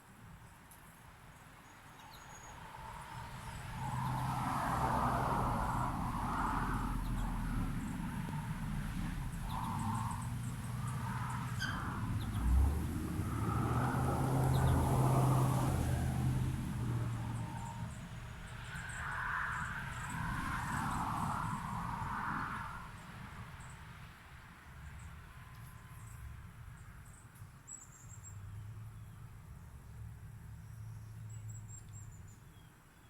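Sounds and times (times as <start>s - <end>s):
vehicle engine humming: 7.0s - 17.5s.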